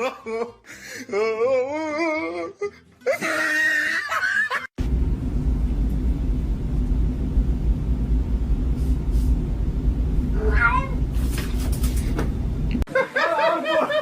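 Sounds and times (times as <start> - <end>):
steady low rumble: 4.8 - 12.9.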